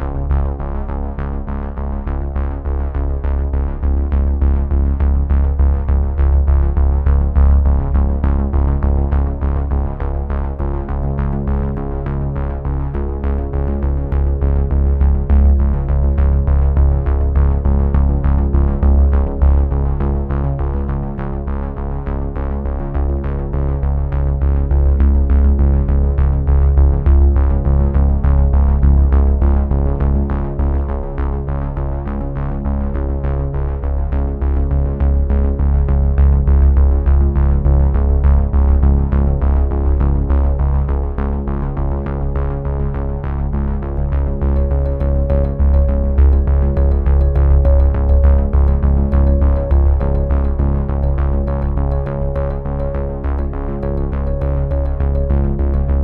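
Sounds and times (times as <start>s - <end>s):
low bass: 0.0s - 56.0s
fast ticking pulse: 44.4s - 56.0s
synthesizer chords: 44.4s - 56.0s.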